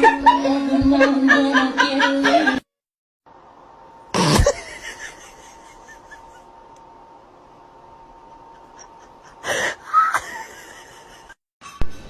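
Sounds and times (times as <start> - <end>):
faint steady hum: 3.3 - 12.0.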